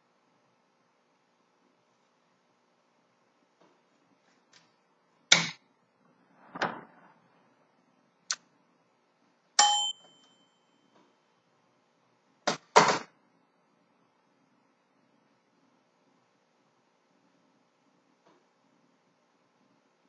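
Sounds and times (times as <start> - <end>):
short metallic ring: 9.6 - 10.8.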